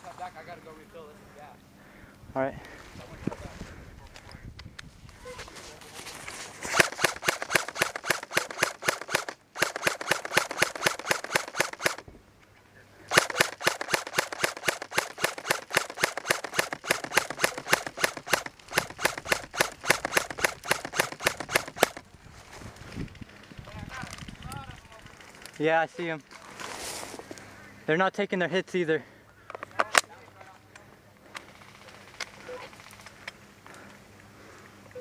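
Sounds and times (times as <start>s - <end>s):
airsoft gun firing rapid shots: 6.7s - 12.0s, 13.1s - 22.0s.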